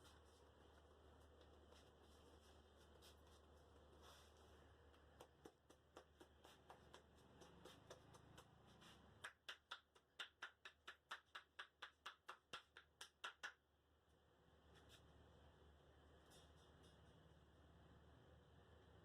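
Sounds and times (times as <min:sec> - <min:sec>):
hands tapping on head: 0:05.0 - 0:13.6.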